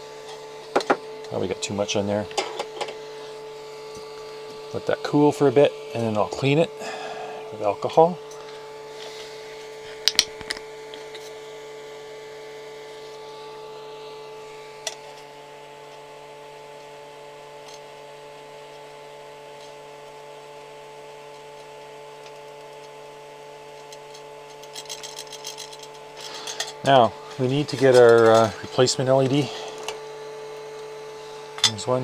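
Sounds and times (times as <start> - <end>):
electronics equipment hum: 0.0 - 32.0.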